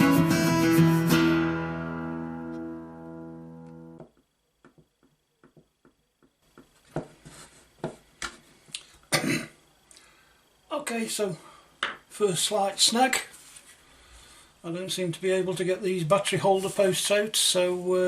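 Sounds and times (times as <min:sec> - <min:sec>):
acoustic guitar music: 0:00.0 - 0:04.0.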